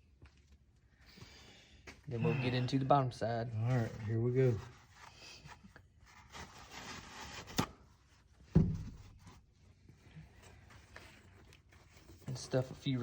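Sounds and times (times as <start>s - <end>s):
dull knock: 8.6s - 9.0s.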